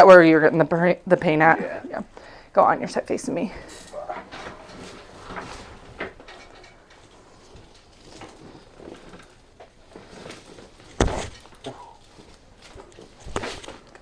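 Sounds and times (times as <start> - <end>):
shuffling and rustling: 3.7 - 14.0
joint cracking with a thud: 10.8 - 11.9.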